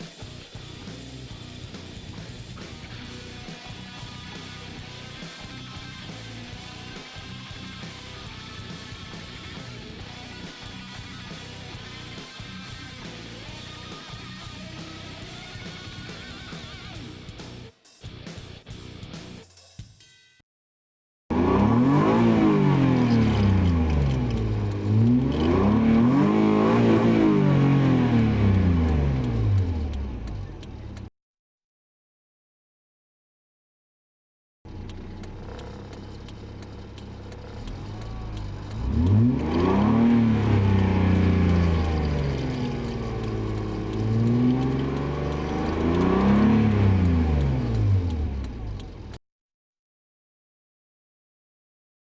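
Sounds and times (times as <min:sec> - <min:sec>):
car engine revving: 0:00.0 - 0:17.3, 0:21.3 - 0:31.1, 0:34.7 - 0:49.2.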